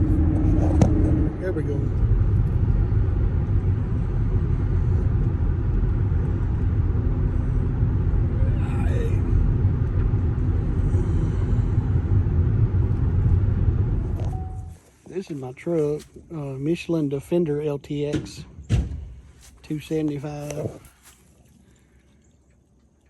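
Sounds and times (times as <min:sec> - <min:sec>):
tire road rumble inside car: 0:00.0 - 0:14.8.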